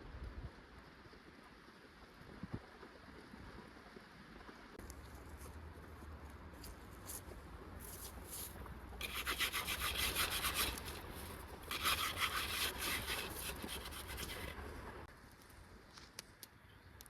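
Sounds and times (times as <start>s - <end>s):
hand saw cutting wood: 9.0s - 14.6s.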